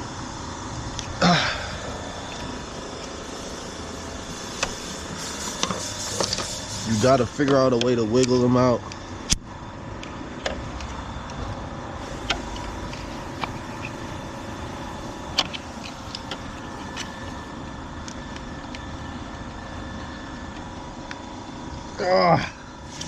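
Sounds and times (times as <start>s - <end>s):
steady mechanical hum: 0.0s - 23.0s
ignition coil clicking and knocking: 4.5s - 4.9s, 12.2s - 14.1s, 15.2s - 17.4s.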